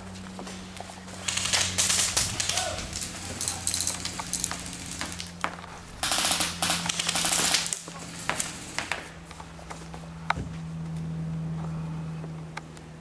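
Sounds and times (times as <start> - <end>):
steady low hum: 0.0 - 13.0
airsoft guns firing: 1.2 - 5.3, 6.0 - 9.1.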